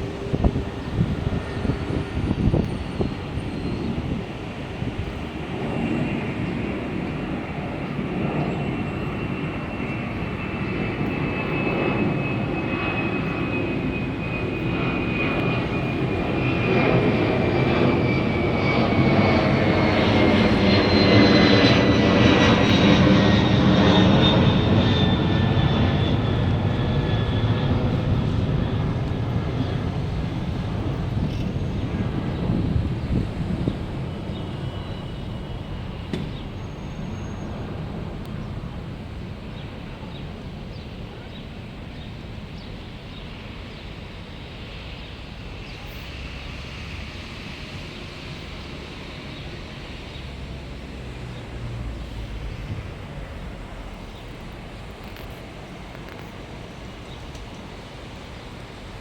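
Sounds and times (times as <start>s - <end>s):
aircraft flying overhead: 0.0s - 59.0s.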